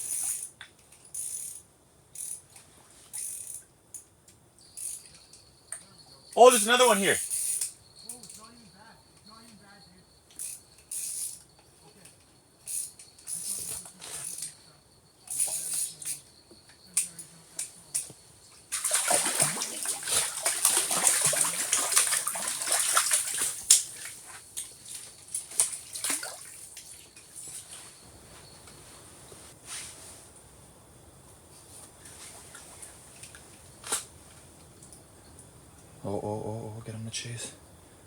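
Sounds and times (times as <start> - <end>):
water splashing: 6.4 - 7.2, 18.7 - 27.2.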